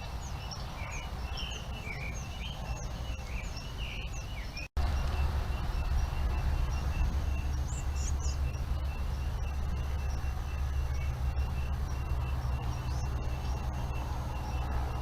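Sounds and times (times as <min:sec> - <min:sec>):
bird chirps: 0:00.0 - 0:15.0
low rumble: 0:04.8 - 0:15.0.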